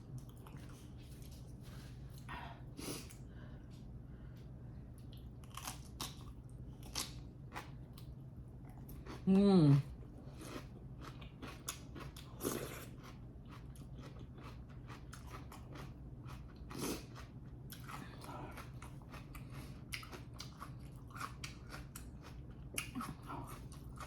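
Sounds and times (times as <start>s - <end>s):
person chewing food: 0.1s - 2.3s, 4.9s - 9.6s, 10.2s - 24.0s
food crunching: 5.0s - 9.4s, 10.3s - 24.0s.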